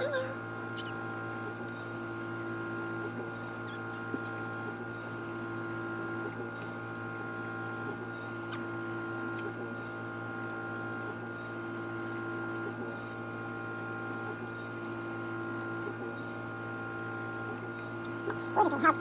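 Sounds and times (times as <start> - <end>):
electric hum of small appliance: 0.0 - 19.0.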